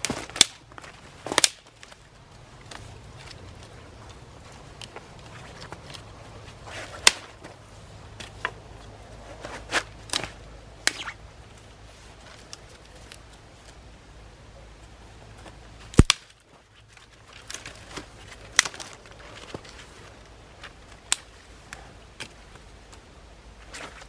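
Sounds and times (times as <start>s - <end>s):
sharp cracks and knocks: 0.0s - 2.0s, 6.7s - 7.6s, 15.9s - 19.9s, 20.6s - 21.4s.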